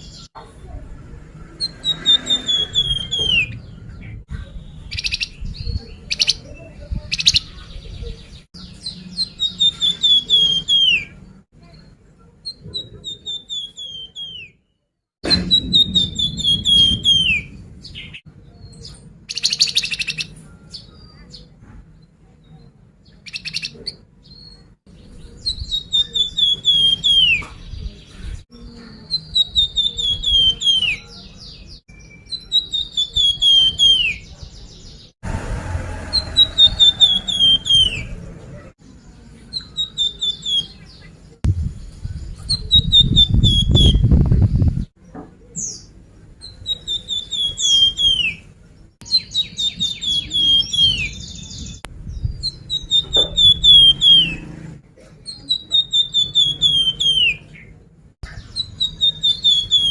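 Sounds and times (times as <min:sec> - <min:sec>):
recorded birdsong: 0:00.0 - 0:59.9
low rumble: 0:15.2 - 0:18.2, 0:35.2 - 0:38.8, 0:41.5 - 0:42.7.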